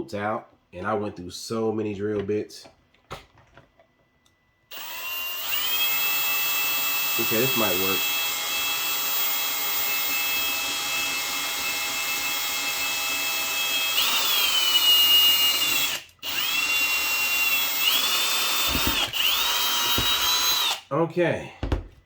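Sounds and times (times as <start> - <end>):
electric drill whining: 4.7 - 20.8.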